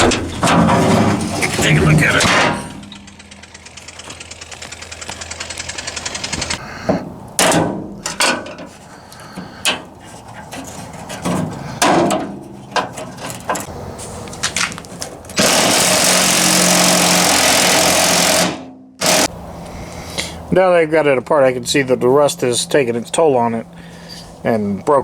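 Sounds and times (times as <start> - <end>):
metallic clunks and scrapes: 0.0 - 4.2, 6.3 - 13.7
power tool running: 1.6 - 6.6, 15.4 - 19.3.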